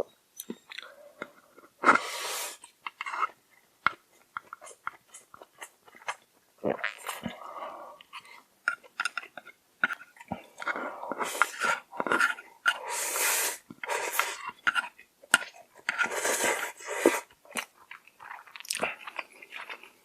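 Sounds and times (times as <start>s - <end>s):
close chewing with wet mouth clicks: 2.8s - 6.3s, 17.2s - 20.0s.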